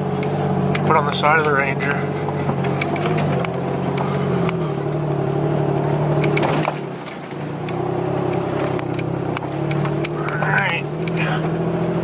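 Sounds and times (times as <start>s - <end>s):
pickup truck engine running: 0.0s - 12.0s
knocks and rattles: 2.2s - 11.7s.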